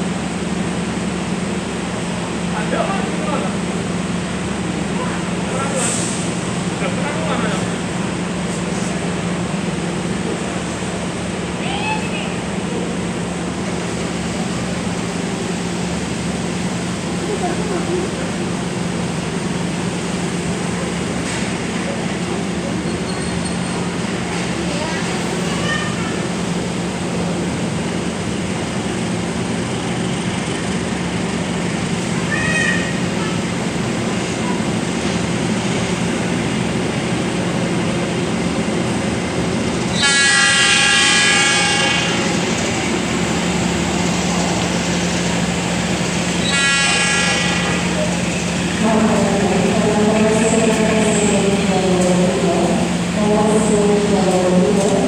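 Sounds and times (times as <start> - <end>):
train wheels rumbling on rails: 0.0 - 55.0
train horn blasts: 39.9 - 42.5, 46.4 - 55.0.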